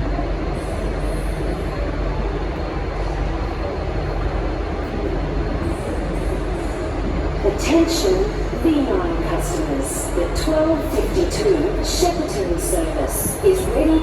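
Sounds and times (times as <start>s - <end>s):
diesel locomotive engine drone: 0.0s - 14.0s.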